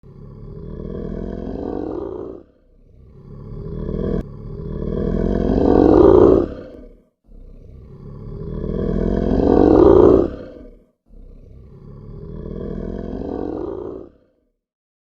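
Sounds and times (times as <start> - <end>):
animal roars: 0.0 - 14.6.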